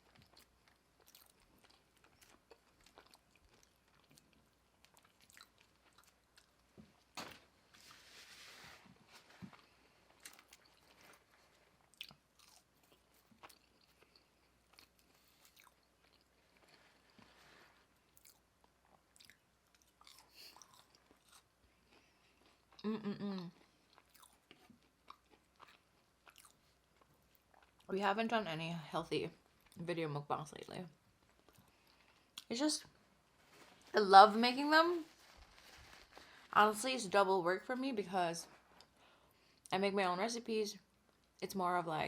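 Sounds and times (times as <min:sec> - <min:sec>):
chewing and biting: 0:00.0 - 0:07.1, 0:09.5 - 0:17.2, 0:18.0 - 0:22.8, 0:23.6 - 0:27.9
soft rustling: 0:06.8 - 0:11.8, 0:16.4 - 0:18.1, 0:32.9 - 0:37.2.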